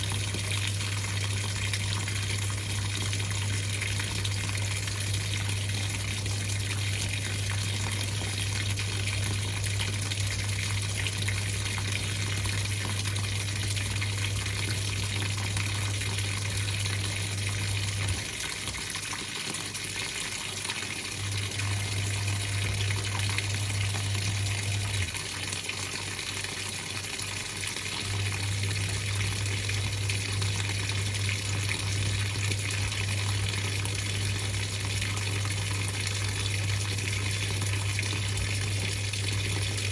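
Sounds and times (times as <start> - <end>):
water rushing in washing machine: 0.0 - 39.9
low hum: 21.2 - 25.1.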